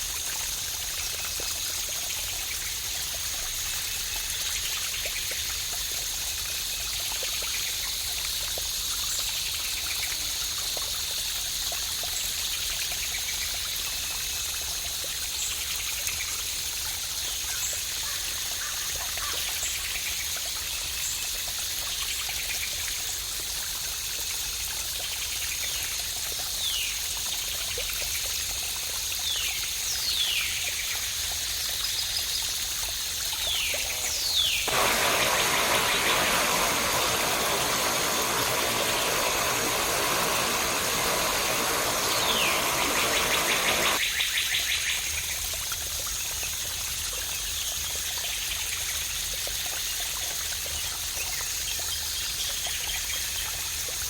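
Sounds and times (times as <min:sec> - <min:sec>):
flowing water: 0:00.0 - 0:44.0
birds whistling: 0:34.5 - 0:44.0.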